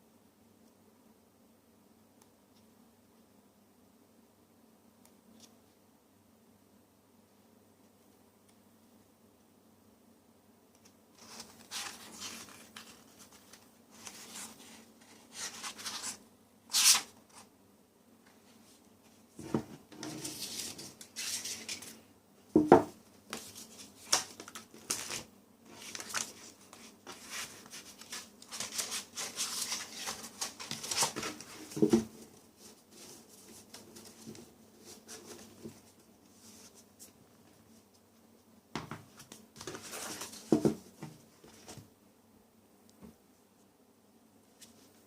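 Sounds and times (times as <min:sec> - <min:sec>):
paper and plastic packaging rustling: 0:11.2 - 0:17.5, 0:23.3 - 0:36.8, 0:39.1 - 0:41.9.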